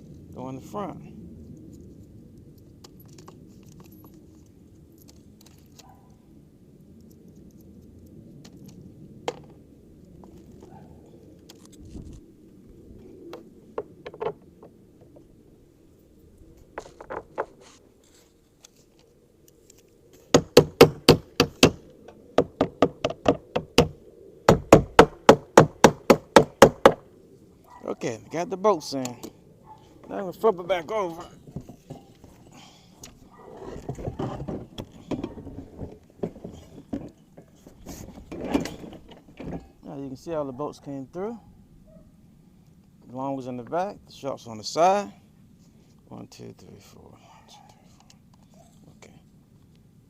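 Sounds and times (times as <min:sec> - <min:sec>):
sharp knocks: 0:20.3 - 0:21.8, 0:22.4 - 0:27.0.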